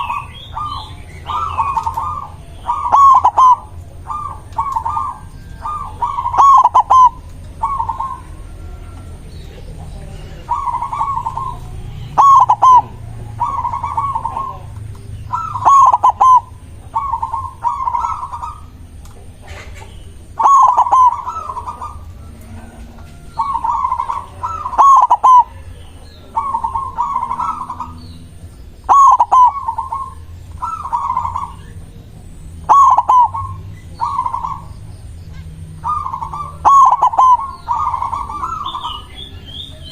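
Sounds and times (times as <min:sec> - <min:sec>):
dove trilled cooing: 0:00.0 - 0:39.9
low steady rumble: 0:00.0 - 0:39.9.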